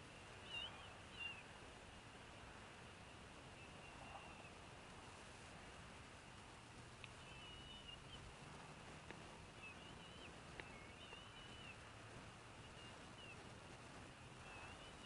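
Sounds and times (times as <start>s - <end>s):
faint high bird calls: 0.0s - 1.6s, 3.0s - 4.7s, 7.0s - 15.0s
background hiss: 0.0s - 15.0s
light clicks: 7.0s - 7.2s, 10.5s - 11.2s.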